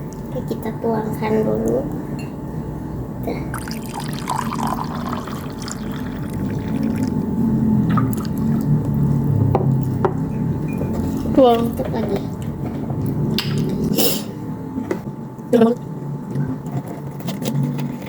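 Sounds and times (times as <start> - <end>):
low hum: 1.5 - 16.8
water pouring into a cup: 3.5 - 7.2, 7.9 - 8.7.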